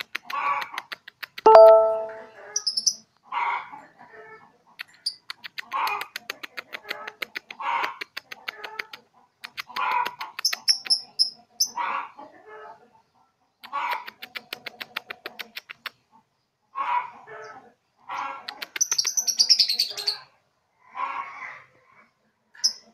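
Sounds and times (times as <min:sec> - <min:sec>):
short high bird chirps: 0:01.5 - 0:02.3
lovebird clicking chatter: 0:09.4 - 0:11.3, 0:13.6 - 0:15.9, 0:18.5 - 0:19.8.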